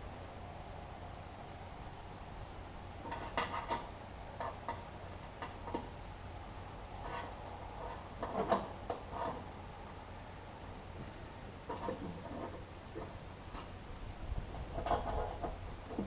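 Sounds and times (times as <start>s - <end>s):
steady low hum: 0.0s - 16.0s
metal clicks and creaks: 3.0s - 5.9s, 14.6s - 16.0s.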